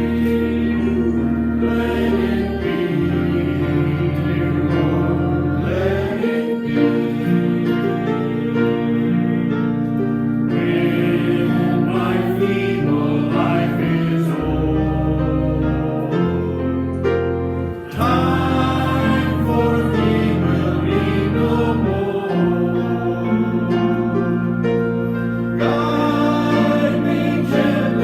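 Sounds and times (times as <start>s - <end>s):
instrumental accompaniment: 0.0s - 28.0s
voices singing a hymn: 0.0s - 28.0s.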